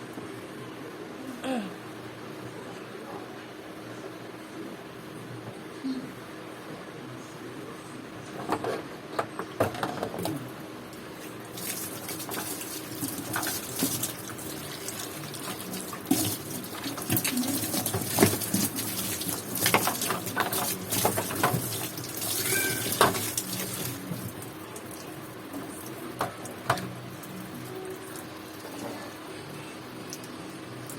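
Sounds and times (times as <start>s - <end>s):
water running and splashing: 10.9s - 29.0s.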